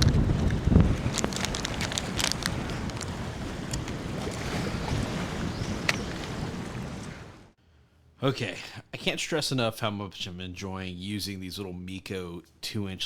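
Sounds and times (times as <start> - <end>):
water sounds: 0.0 - 7.6
wind buffeting microphone: 0.0 - 7.6.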